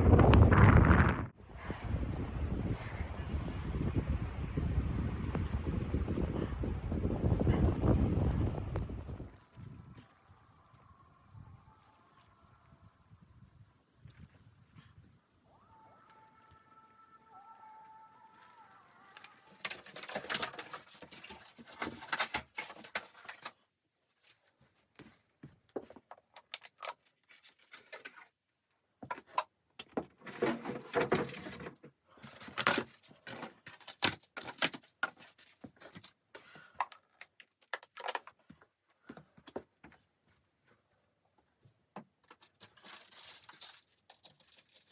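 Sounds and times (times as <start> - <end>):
rustling: 38.3 - 44.9.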